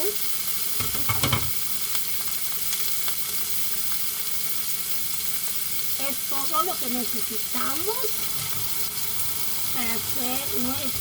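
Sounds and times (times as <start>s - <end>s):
chicken sizzling in skillet: 0.0s - 11.0s
oil popping: 0.8s - 1.6s, 8.1s - 11.0s.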